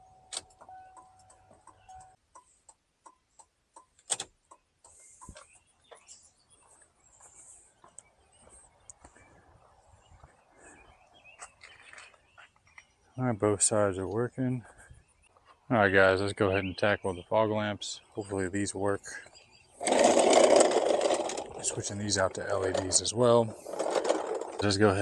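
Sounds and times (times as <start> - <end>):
turn signal flasher ticking: 0.3 - 5.3.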